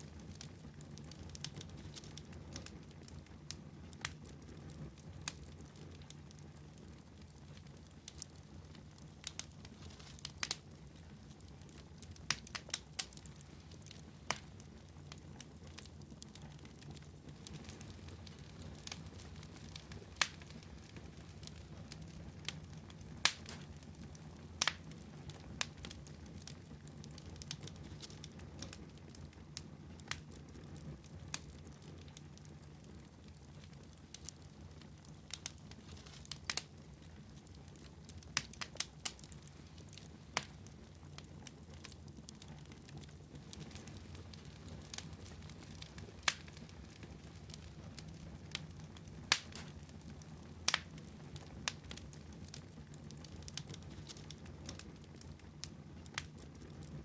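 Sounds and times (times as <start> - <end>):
fire crackling in fireplace: 0.0 - 57.0
sharp pops and snaps: 11.6 - 23.8, 24.6 - 28.8, 34.9 - 36.8, 37.4 - 49.9, 50.6 - 52.2, 55.6 - 56.4.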